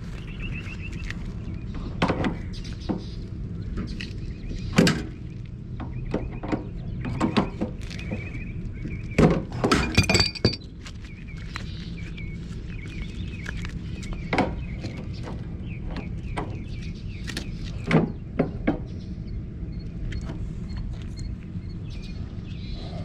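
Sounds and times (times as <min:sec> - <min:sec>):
steel pipes knocking and clinking: 0:09.5 - 0:10.7.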